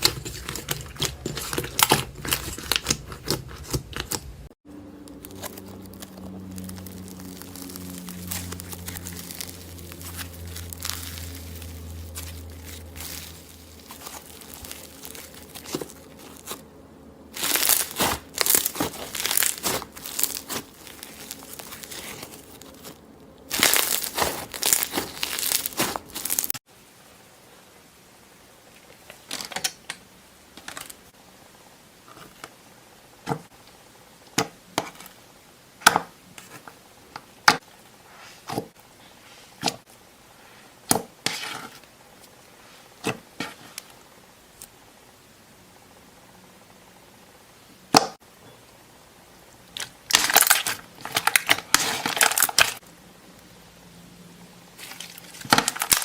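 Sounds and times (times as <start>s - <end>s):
slime crackling: 0.0s - 16.6s, 17.4s - 26.6s, 49.8s - 52.8s.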